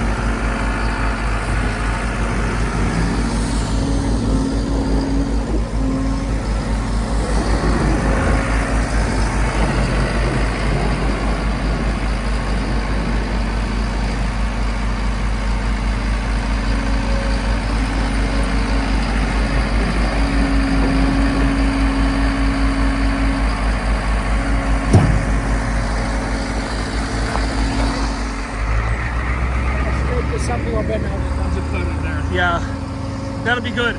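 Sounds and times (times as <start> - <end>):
diesel engine running: 0.0 - 33.9
higher hum: 24.9 - 26.1.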